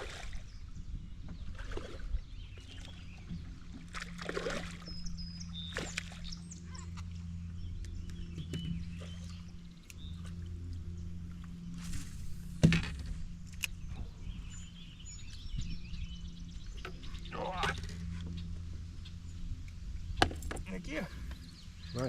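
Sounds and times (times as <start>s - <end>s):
steady low hum: 0.0s - 22.0s
knocks and splashes: 1.4s - 5.0s, 5.6s - 6.3s, 11.9s - 13.3s.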